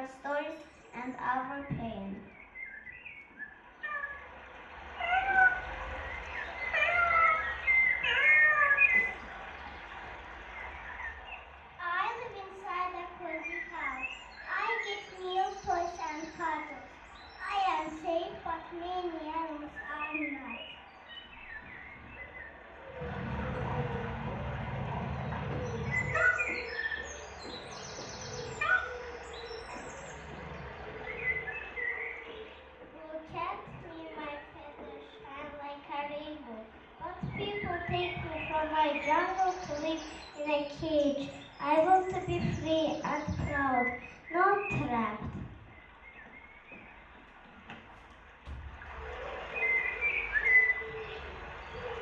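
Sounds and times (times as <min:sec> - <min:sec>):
birds chirping: 0:00.0 - 0:52.0
cat meowing: 0:03.8 - 0:04.3, 0:05.0 - 0:05.7, 0:06.7 - 0:09.2
low rumble: 0:22.6 - 0:28.6.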